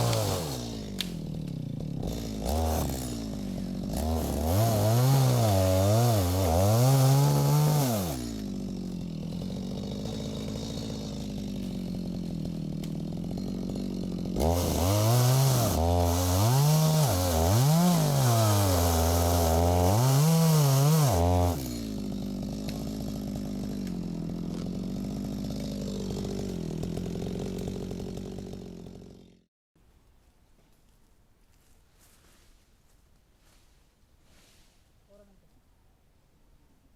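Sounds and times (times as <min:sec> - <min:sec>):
chainsaw cutting wood: 0:00.0 - 0:29.5.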